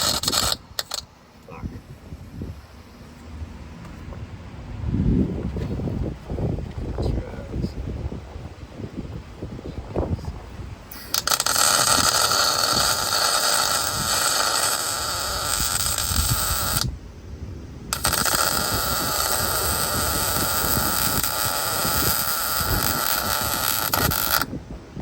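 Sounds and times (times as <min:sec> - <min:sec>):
arc welding crackling hiss: 0:00.0 - 0:01.8, 0:10.9 - 0:17.2, 0:17.9 - 0:24.6.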